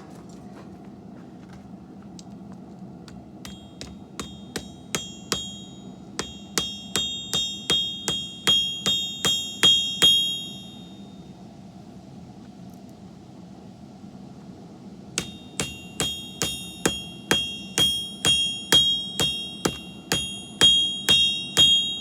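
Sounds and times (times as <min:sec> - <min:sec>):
hammer ringing on anvil: 0:03.4 - 0:11.2, 0:15.2 - 0:22.0.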